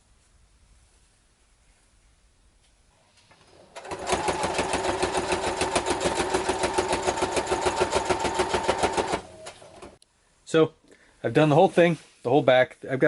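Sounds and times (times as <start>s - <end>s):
sewing machine stitching: 3.3s - 10.0s.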